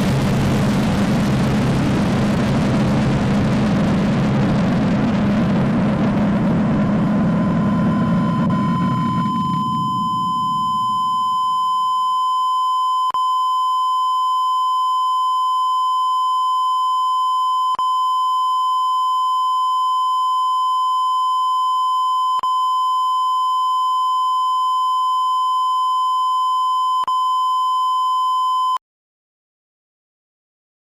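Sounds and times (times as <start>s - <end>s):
loud low noise: 0.0s - 11.6s
steady pure test tone: 5.2s - 28.8s.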